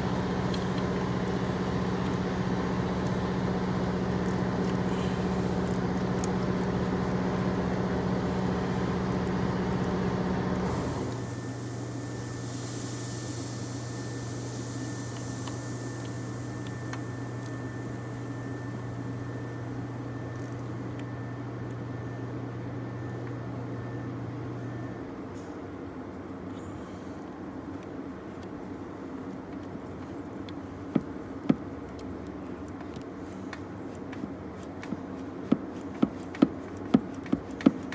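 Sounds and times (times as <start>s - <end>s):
machine hum: 0.0s - 25.0s.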